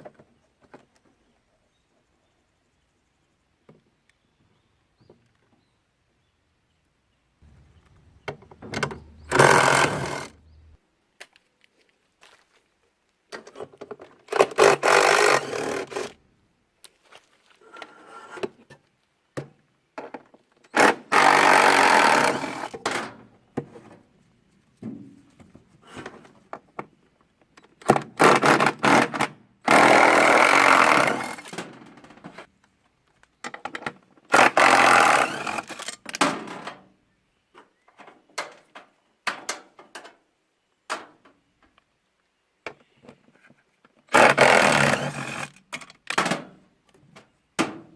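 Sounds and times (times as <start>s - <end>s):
parts clicking and knocking: 7.5s - 10.4s
power tool bursts: 8.8s - 10.4s, 20.8s - 22.8s, 29.7s - 31.5s, 34.3s - 35.9s, 44.1s - 45.6s.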